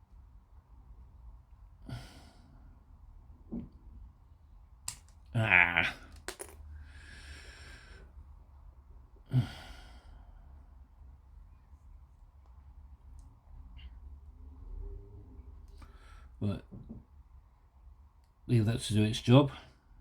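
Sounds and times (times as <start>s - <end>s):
man breathing out and sighing: 1.8s - 2.6s
man grunting: 5.4s - 6.1s
plastic parts clicking: 6.1s - 6.6s.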